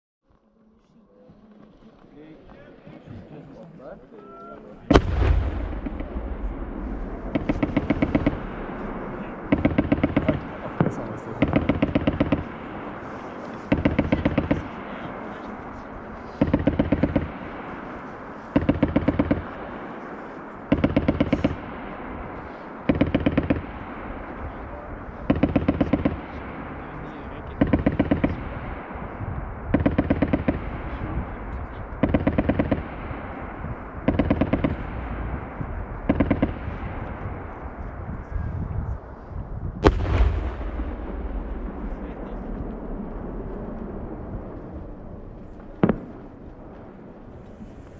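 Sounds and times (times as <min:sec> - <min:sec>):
steady rumble: 0:04.8 - 0:47.9
machine gun firing bursts: 0:07.3 - 0:08.6, 0:11.4 - 0:12.7, 0:20.7 - 0:21.8, 0:32.0 - 0:33.0, 0:34.0 - 0:34.8.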